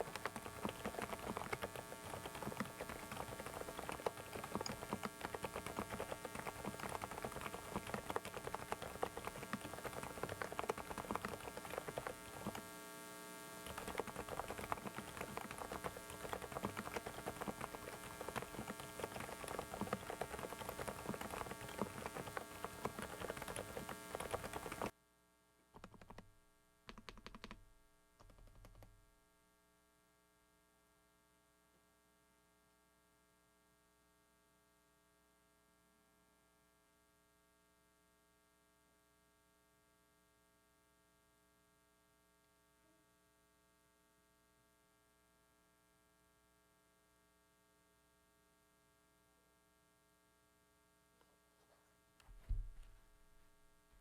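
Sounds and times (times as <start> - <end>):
mechanical keyboard typing: 0.0 - 12.7, 13.6 - 24.9, 25.8 - 26.3, 26.9 - 27.6, 28.2 - 29.0
steady electrical hum: 0.0 - 25.3.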